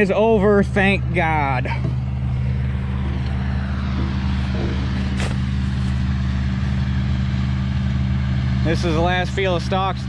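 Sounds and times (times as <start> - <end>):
vehicle engine humming: 0.0 - 10.0.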